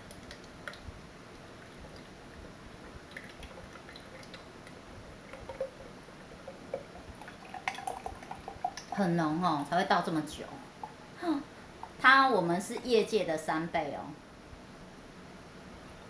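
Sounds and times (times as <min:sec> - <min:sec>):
faint drips and gurgles: 0:00.0 - 0:13.5
thick liquid pouring into cup: 0:01.6 - 0:09.0.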